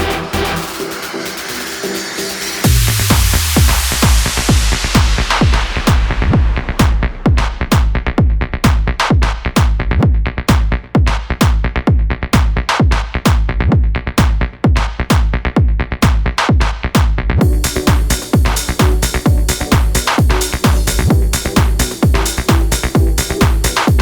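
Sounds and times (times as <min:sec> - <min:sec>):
electronic dance music: 0:00.0 - 0:11.7, 0:14.2 - 0:24.0
kick drum beating: 0:02.6 - 0:24.0
bright hissing layer: 0:17.4 - 0:23.9.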